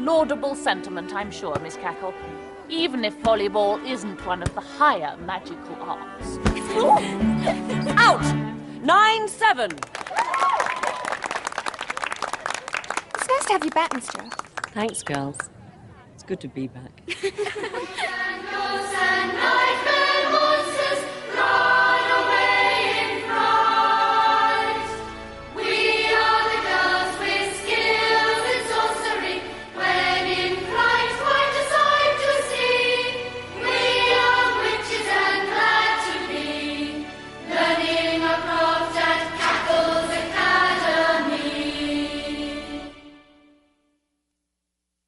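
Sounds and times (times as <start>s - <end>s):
choir singing theme music: 17.8s - 43.7s.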